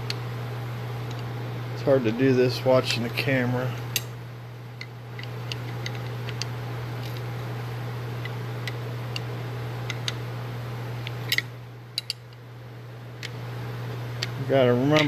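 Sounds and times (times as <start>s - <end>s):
steady low hum: 0.0s - 15.0s
metallic tool clicks and taps: 11.3s - 12.3s.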